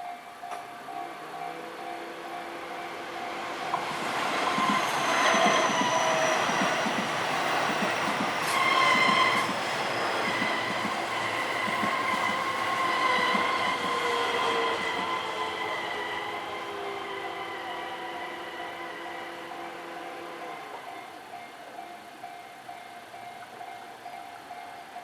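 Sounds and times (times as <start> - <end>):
train wheels squealing: 2.8 - 20.5
wheels clattering on rails: 3.7 - 15.2.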